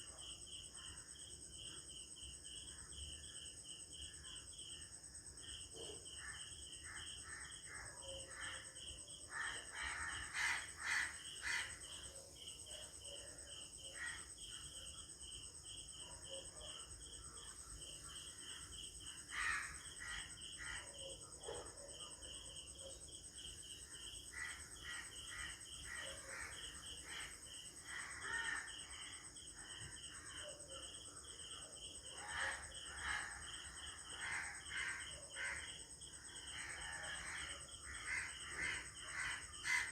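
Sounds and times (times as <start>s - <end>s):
crickets chirping: 0.0s - 39.9s
crows cawing: 19.3s - 19.8s, 38.0s - 39.9s.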